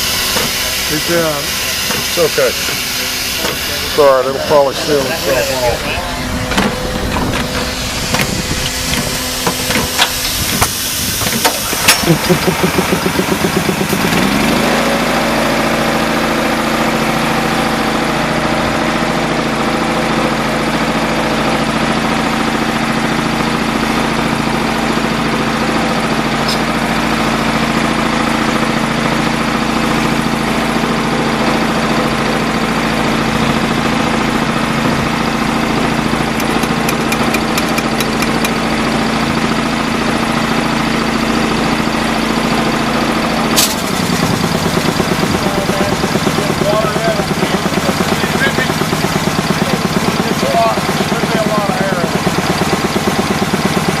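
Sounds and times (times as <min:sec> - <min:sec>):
air compressor engine running: 0:00.0 - 0:54.0
sharp click: 0:36.4 - 0:38.6.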